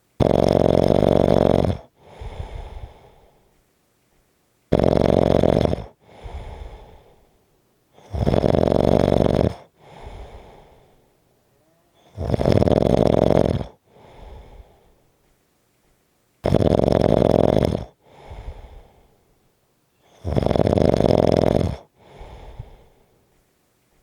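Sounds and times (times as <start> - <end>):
person snoring: 0.2 - 3.1, 4.7 - 7.1, 8.0 - 10.8, 12.0 - 14.8, 16.4 - 18.9, 20.1 - 22.9
quiet breath: 1.8 - 4.7, 5.8 - 8.2, 9.5 - 12.2, 13.6 - 16.4, 17.8 - 20.4, 21.7 - 24.0.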